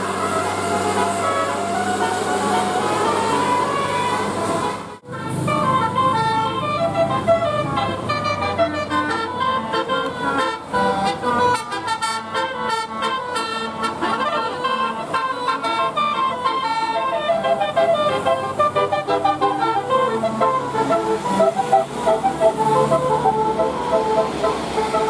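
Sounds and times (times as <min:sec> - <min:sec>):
multi-tone bus horn melody: 0:00.0 - 0:25.0.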